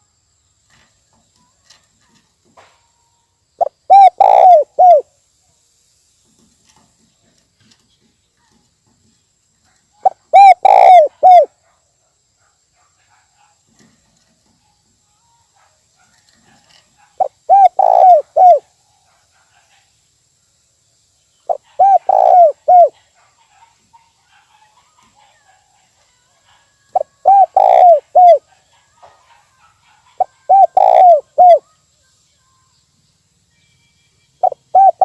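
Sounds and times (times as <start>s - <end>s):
dove cooing: 3.6s - 5.1s, 10.0s - 11.5s, 16.3s - 18.7s, 21.5s - 31.6s, 34.4s - 35.0s.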